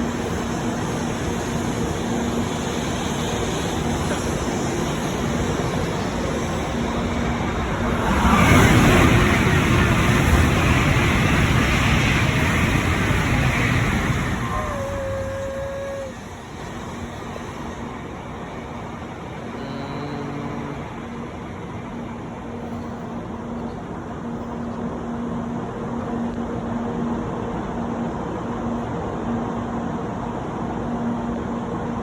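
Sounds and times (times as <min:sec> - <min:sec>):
railway rumble: 0:00.0 - 0:32.0
low wavering hum: 0:19.4 - 0:21.2.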